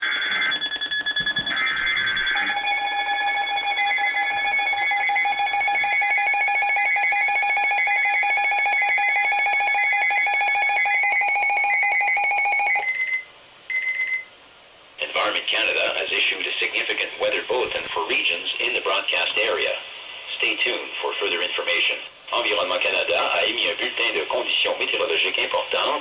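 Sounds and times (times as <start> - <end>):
emergency alert two-tone signal: 0.0 - 14.3
short beep: 12.8 - 14.3.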